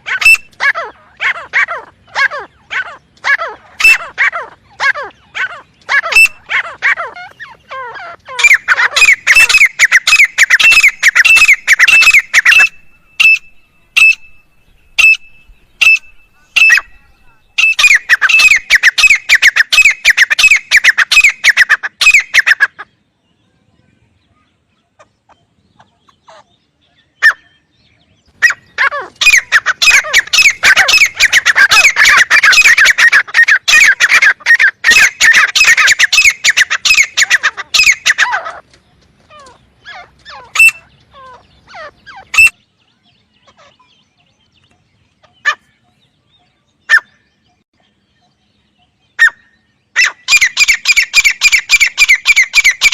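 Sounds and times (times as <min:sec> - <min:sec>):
francolin calling: 0:00.0 - 0:22.8, 0:25.3 - 0:38.6, 0:39.4 - 0:44.0, 0:48.2 - 0:52.9.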